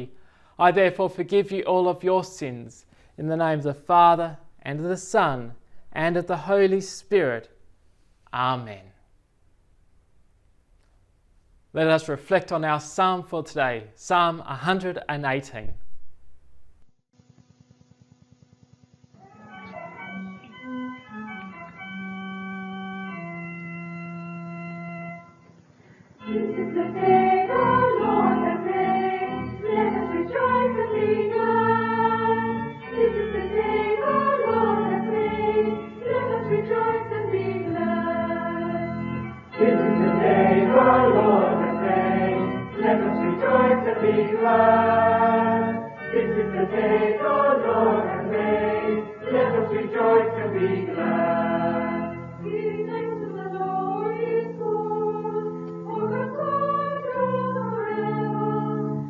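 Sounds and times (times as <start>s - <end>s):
church organ chords: 17.2s - 59.0s
group of voices singing: 26.2s - 59.0s.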